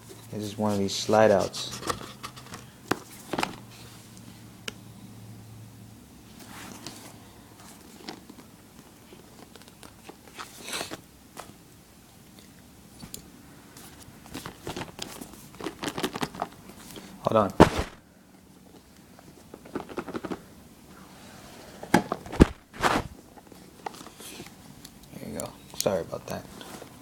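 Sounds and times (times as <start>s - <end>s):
cardboard packaging clicks and scrapes: 13.8s - 18.0s, 21.8s - 24.5s.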